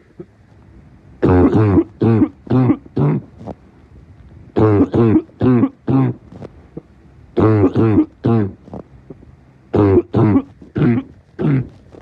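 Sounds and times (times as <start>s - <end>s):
man coughing: 1.2s - 3.3s, 4.6s - 6.2s, 7.4s - 8.6s, 9.8s - 11.8s.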